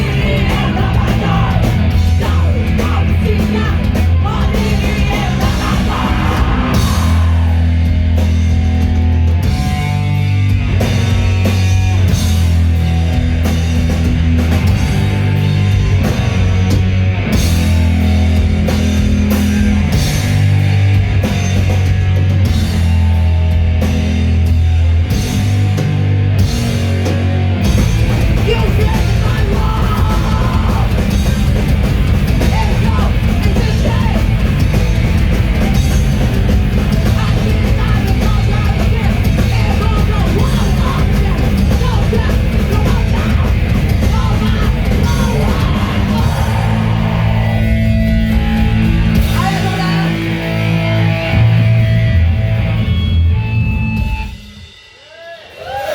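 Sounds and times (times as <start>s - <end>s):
shouted vocals: 0.0s - 10.2s, 28.3s - 34.6s, 36.8s - 50.4s, 55.0s - 55.9s
live rock music: 0.0s - 55.9s.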